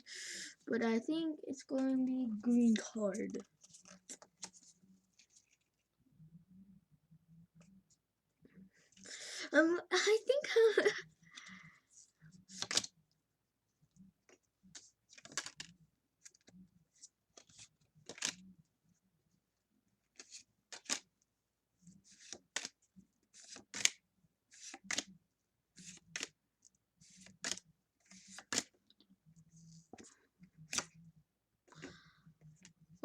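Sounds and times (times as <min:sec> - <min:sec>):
trading cards sliding and snapping: 0:12.5 - 0:12.9, 0:15.1 - 0:15.7, 0:17.4 - 0:18.4, 0:20.2 - 0:21.1, 0:22.1 - 0:25.1, 0:25.8 - 0:26.4, 0:27.1 - 0:28.8, 0:29.9 - 0:31.0.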